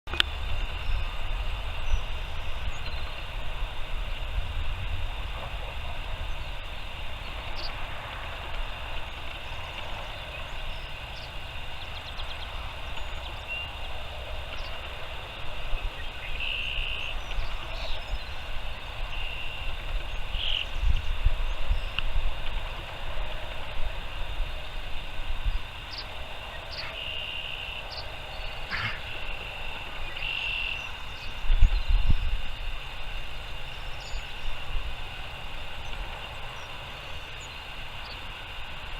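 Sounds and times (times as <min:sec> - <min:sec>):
low rumble with thumps: 0:00.1 - 0:26.0
chorus of small calling animals: 0:00.6 - 0:21.9, 0:25.6 - 0:31.4
short animal calls: 0:28.7 - 0:29.1.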